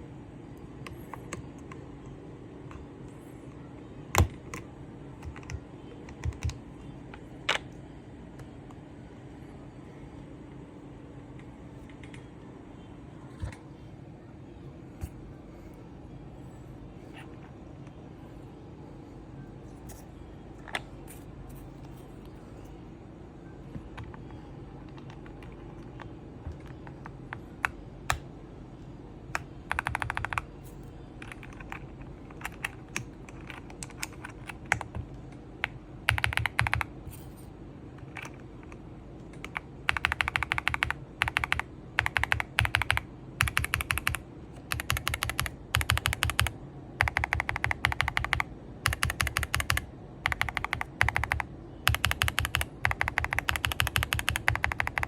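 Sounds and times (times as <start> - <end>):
typing on mechanical keyboard: 5.2 - 6.6, 29.4 - 30.5, 31.2 - 36.9, 38.0 - 55.0.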